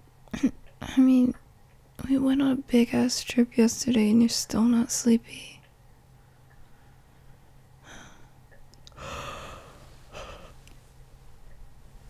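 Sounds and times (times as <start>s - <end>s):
woman breathing softly: 6.2s - 10.9s
woman sighing: 8.9s - 10.6s.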